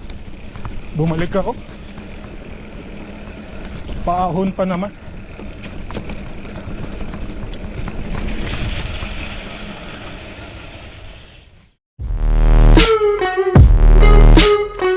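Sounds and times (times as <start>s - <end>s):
bicycle riding rumble: 0.0s - 11.8s
electronic music with heavy beat: 12.0s - 14.9s.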